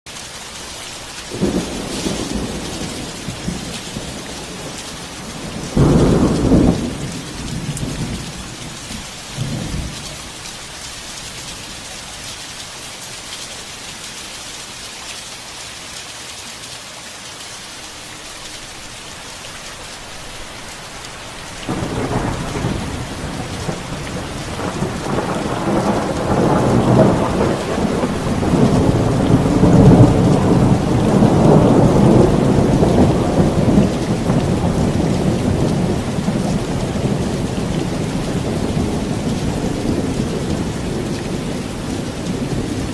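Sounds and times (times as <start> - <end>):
heavy rain falling: 0.1 - 42.9
low thunder rumbles: 1.3 - 10.4, 21.7 - 42.9.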